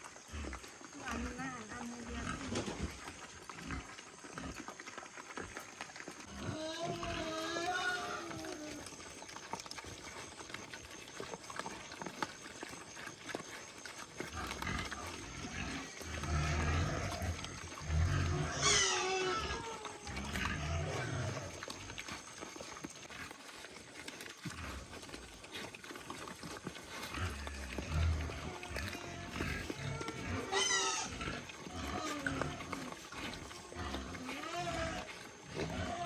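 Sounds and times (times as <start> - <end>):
pigs grunting: 0.0 - 36.0
pig squealing: 6.2 - 9.0, 14.2 - 22.1, 26.4 - 36.0.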